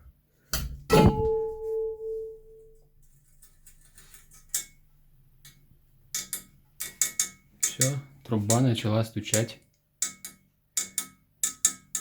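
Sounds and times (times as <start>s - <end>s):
metal disc clanking and ringing: 0.9s - 2.8s.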